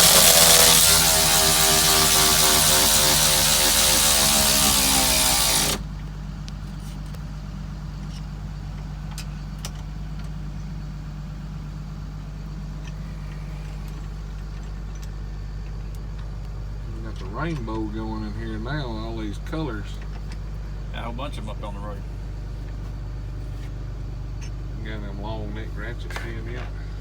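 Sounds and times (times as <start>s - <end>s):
power tool hiss and whine: 0.0s - 5.9s.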